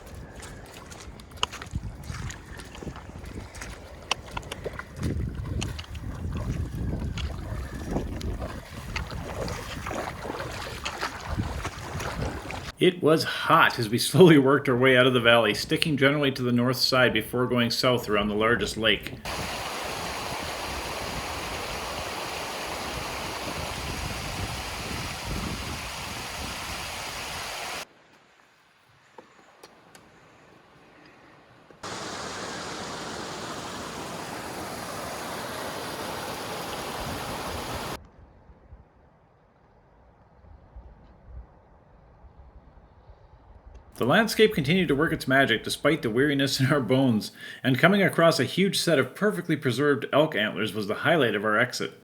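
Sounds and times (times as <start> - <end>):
footsteps on rocky ground: 0.0 - 12.8
wind rumbling on microphone: 0.0 - 12.8, 19.1 - 27.8, 33.5 - 44.0
mountain stream rushing: 19.2 - 27.9, 31.8 - 38.0.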